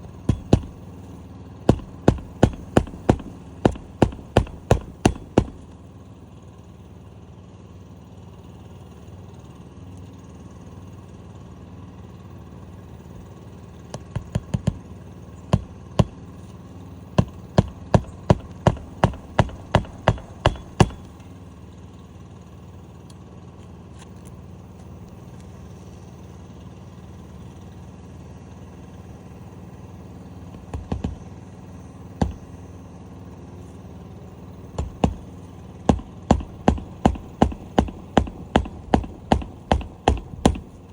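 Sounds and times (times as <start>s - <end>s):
hammer striking roofing nails: 0.0s - 1.0s, 1.7s - 5.8s, 14.0s - 16.4s, 17.1s - 21.3s, 30.5s - 31.4s, 32.2s - 32.6s, 34.7s - 40.9s
steady low hum: 0.0s - 9.4s, 12.0s - 23.0s, 28.6s - 40.9s.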